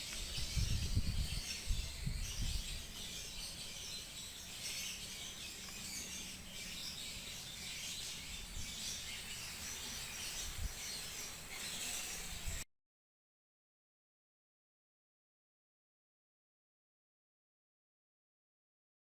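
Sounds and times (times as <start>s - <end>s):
birds chirping: 0.0s - 12.6s.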